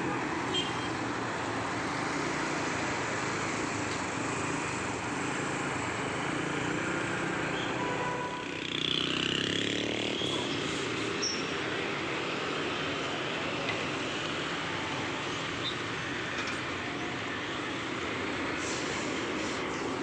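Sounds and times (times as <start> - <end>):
steady traffic hum: 0.0 - 20.0.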